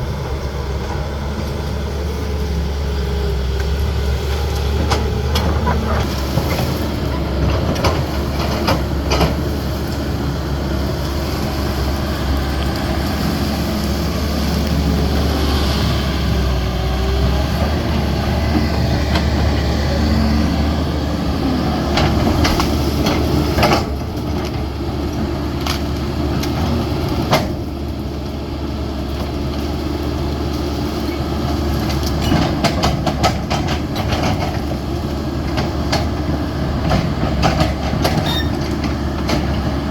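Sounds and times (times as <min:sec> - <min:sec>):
excavator diesel engine running: 0:00.0 - 0:39.9
machine knocks and clanks: 0:04.6 - 0:09.6, 0:31.8 - 0:34.8, 0:35.5 - 0:39.9.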